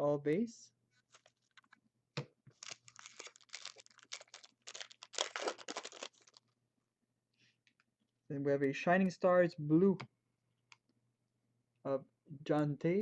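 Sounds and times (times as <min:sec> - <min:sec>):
foil wrapper crinkling: 0:01.1 - 0:01.8, 0:02.5 - 0:06.4.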